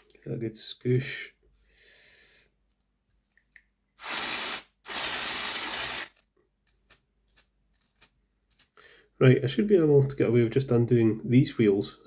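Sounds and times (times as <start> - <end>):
aerosol spray bursts: 4.0 - 6.2.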